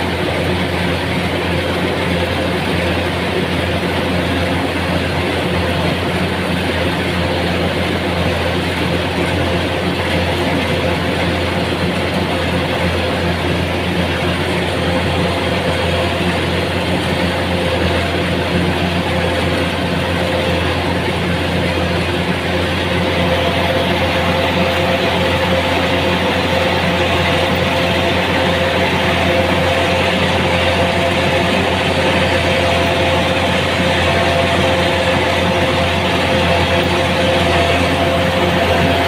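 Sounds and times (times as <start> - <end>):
engine running steadily: 0.0 - 39.0.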